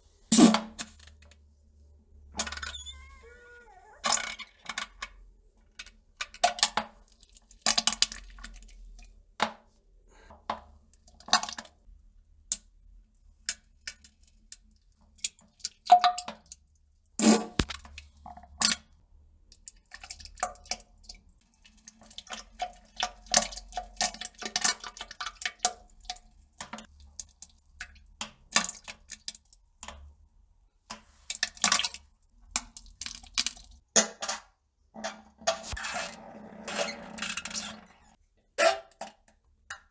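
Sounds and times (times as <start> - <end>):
farts: 2.6 - 4.3
plops and drips into toilet water: 6.2 - 9.6, 14.8 - 16.8, 17.6 - 30.2, 30.8 - 33.8.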